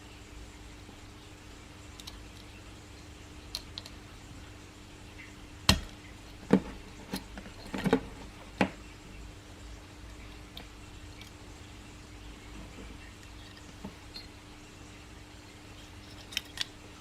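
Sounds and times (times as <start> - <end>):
faint steady hum: 0.0 - 17.0
small plastic parts clicking: 1.9 - 2.6, 3.5 - 4.0, 16.0 - 16.8.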